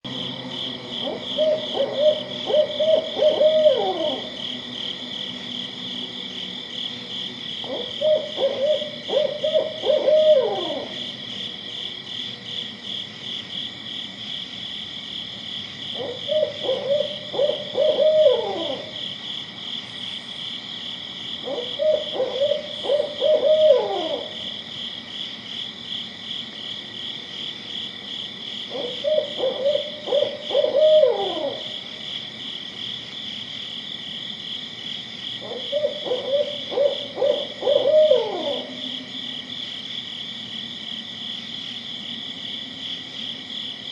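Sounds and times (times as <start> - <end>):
owl hooting: 0.2 - 11.2, 15.9 - 19.2, 21.4 - 24.6, 28.6 - 31.9, 35.4 - 39.3.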